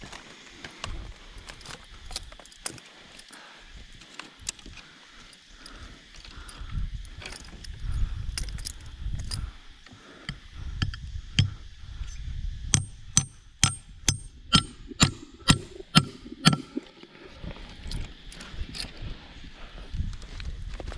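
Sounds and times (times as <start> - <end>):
tool striking with high ring: 12.7 - 16.7.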